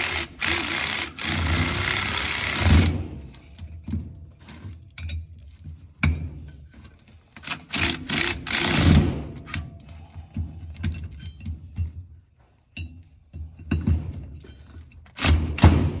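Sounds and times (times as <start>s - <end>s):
power tool running: 0.0s - 3.3s, 7.7s - 9.1s.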